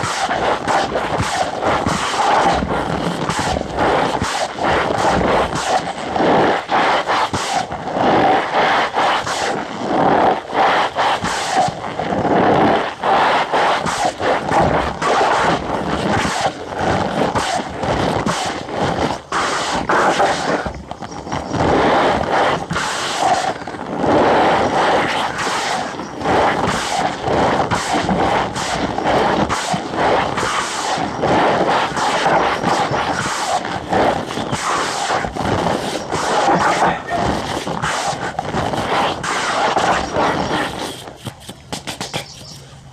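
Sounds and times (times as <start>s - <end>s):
cornstarch squeaky crunching: 32.0s - 42.8s.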